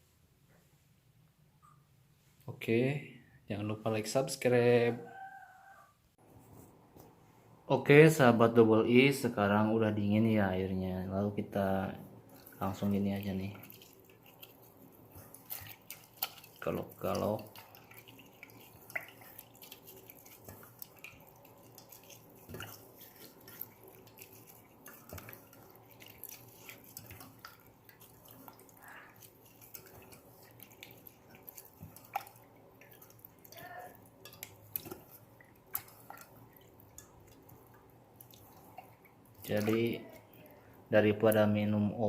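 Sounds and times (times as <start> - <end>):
liquid dripping and splashing: 12.0 - 41.6.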